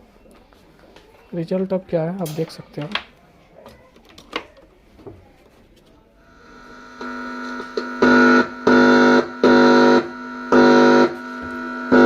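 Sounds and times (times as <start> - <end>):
quiet amplifier hum: 1.9 - 12.0
distorted buzzing from amplifier: 6.2 - 12.0.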